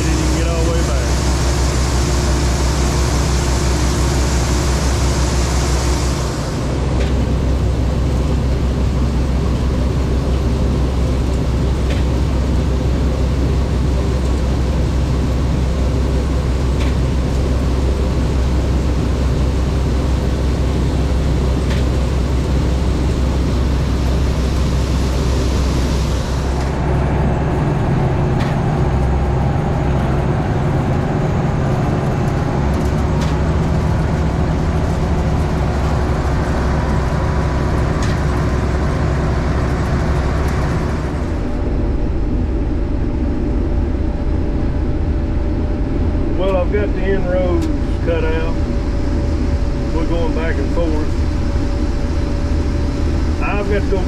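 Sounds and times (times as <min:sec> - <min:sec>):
combine harvester running: 0:00.0 - 0:54.0
diesel engine drone: 0:00.0 - 0:54.0.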